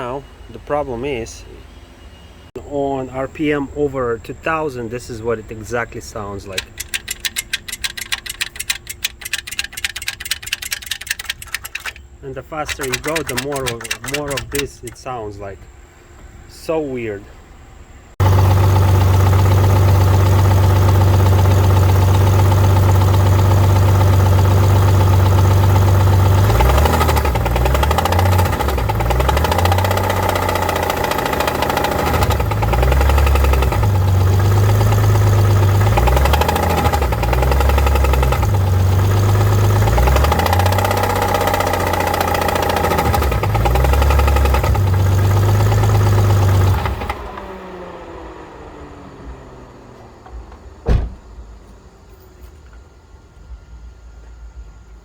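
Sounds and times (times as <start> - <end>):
engine winding down: 6.2 - 15.0, 18.2 - 50.8
car engine revving: 18.2 - 48.6.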